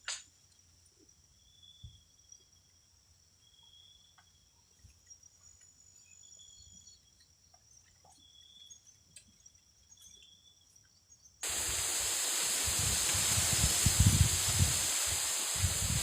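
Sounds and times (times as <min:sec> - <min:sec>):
insect trills: 0:00.0 - 0:16.0
small ticks: 0:03.6 - 0:11.2
loud rushing hiss: 0:11.4 - 0:16.0.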